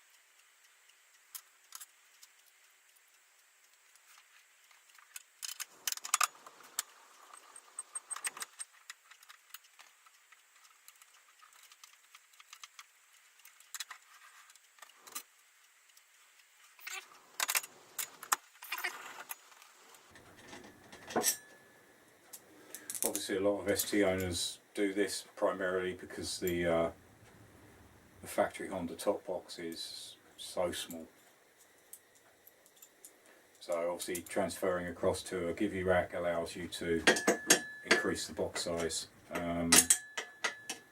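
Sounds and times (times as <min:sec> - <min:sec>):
metallic clicks of hand tools: 0:04.8 - 0:09.9, 0:16.8 - 0:19.4, 0:37.0 - 0:40.9.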